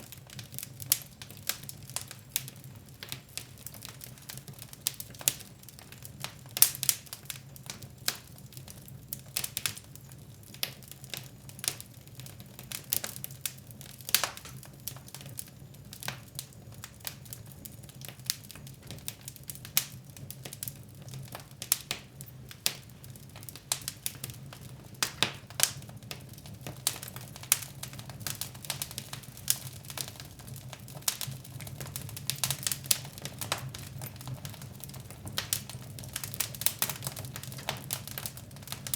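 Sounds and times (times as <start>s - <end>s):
wood fire crackling and popping: 0.0s - 38.9s.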